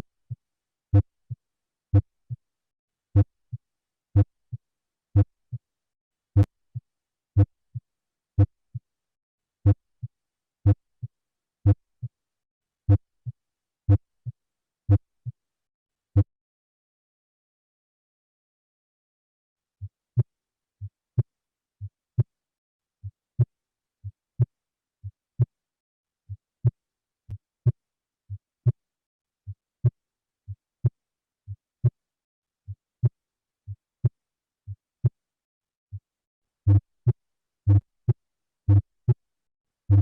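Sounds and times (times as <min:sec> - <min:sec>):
heartbeat through stethoscope: 0:36.7 - 0:37.9, 0:38.7 - 0:39.2.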